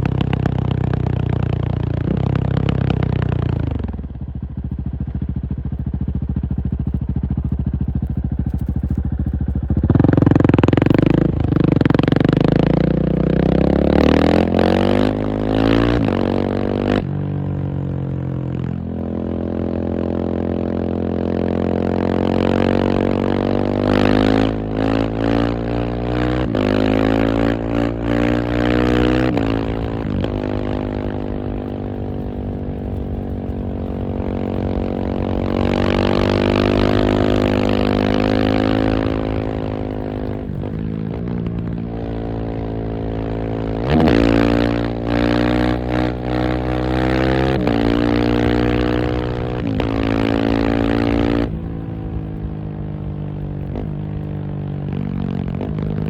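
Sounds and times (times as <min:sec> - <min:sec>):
motorcycle engine revving: 0:00.0 - 0:56.0
exhaust crackles: 0:29.3 - 0:44.3.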